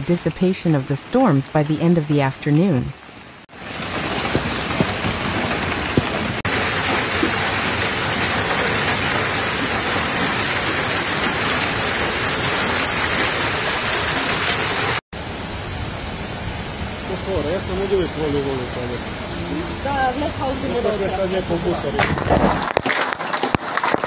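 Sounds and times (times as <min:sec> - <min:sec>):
heavy rain on hard surfaces: 0:03.0 - 0:24.0.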